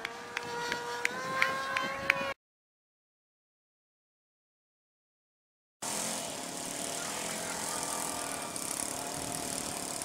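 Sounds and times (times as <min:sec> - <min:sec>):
model airplane engine and propeller: 0:00.0 - 0:02.4, 0:05.8 - 0:10.0.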